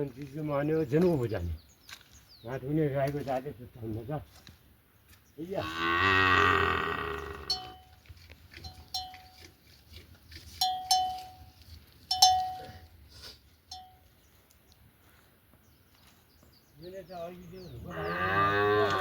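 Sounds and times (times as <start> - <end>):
cow mooing: 5.6 - 7.8, 17.9 - 19.0
cow bell clanking: 7.4 - 9.5, 10.5 - 13.0, 13.7 - 14.1.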